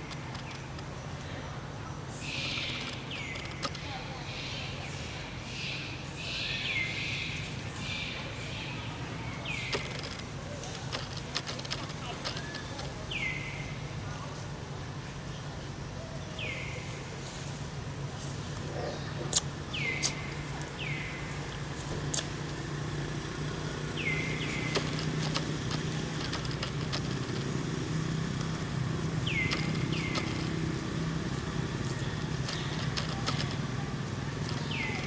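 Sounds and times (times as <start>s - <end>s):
low motor hum: 16.7s - 35.0s
sharp clicks: 24.4s - 27.7s, 28.3s - 30.7s, 31.4s - 33.6s.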